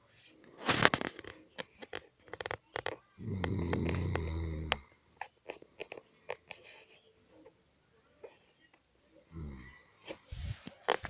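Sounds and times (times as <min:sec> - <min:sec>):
man snoring: 0:03.2 - 0:04.8.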